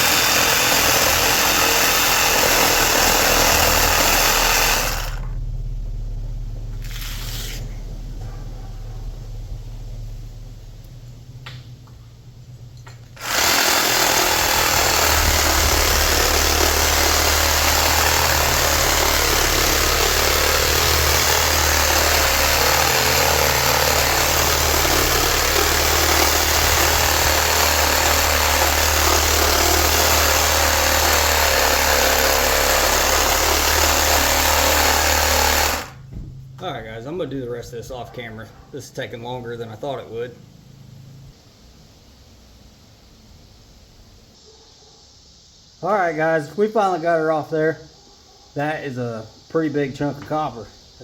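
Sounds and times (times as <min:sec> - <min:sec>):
power tool cutting metal: 0:00.0 - 0:05.4, 0:13.2 - 0:36.1.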